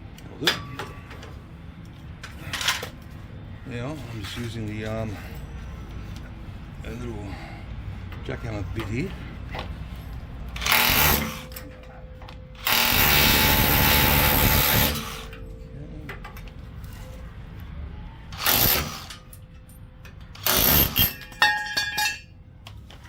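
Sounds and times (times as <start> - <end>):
power hammer chiselling steel: 10.6 - 11.6, 12.6 - 15.4, 18.4 - 19.1, 20.4 - 21.6
metallic ringing: 11.0 - 18.3.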